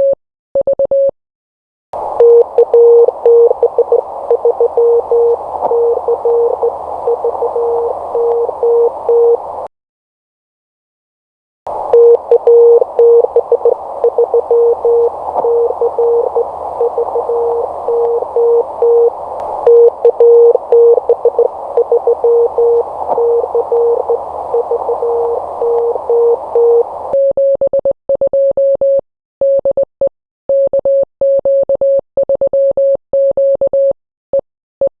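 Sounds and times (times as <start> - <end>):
radio band hiss: 2.0 - 9.7, 11.7 - 27.2
morse code tone: 2.1 - 9.7, 11.7 - 27.2.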